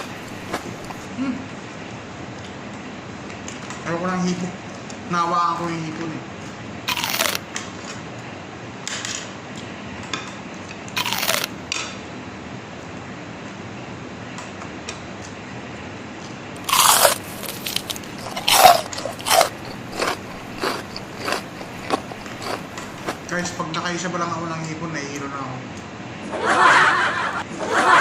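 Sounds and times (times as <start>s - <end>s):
crisp food crunching: 0.0s - 1.1s, 6.9s - 7.6s, 10.9s - 11.5s, 16.6s - 23.6s.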